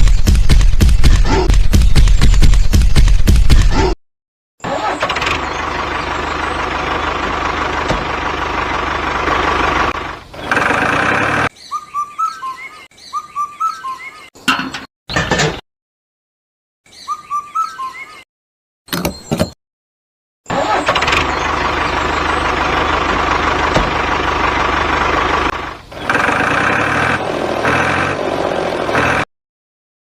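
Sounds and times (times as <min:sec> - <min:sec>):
vehicle engine running: 0:04.8 - 0:11.5, 0:20.6 - 0:29.3
bird chirps: 0:05.2 - 0:07.2, 0:10.2 - 0:14.5, 0:16.9 - 0:18.3, 0:18.9 - 0:19.6.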